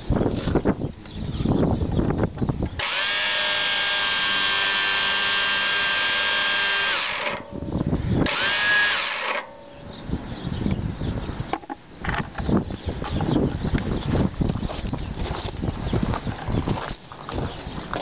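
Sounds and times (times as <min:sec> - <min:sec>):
electric starter motor whining: 0:02.8 - 0:09.9.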